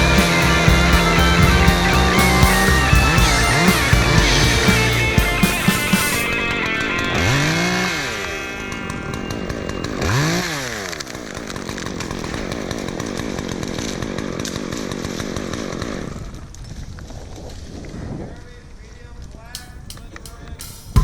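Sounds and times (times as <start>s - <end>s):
chainsaw revving: 0.0s - 16.0s.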